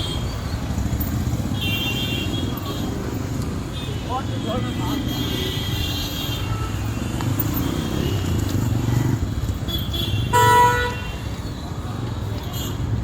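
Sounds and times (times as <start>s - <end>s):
vehicle engines rumbling: 0.0s - 13.0s.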